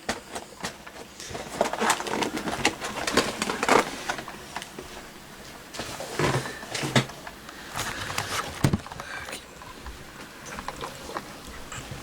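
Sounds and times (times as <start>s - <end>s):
coffee maker gurgling and sputtering: 6.2s - 12.0s.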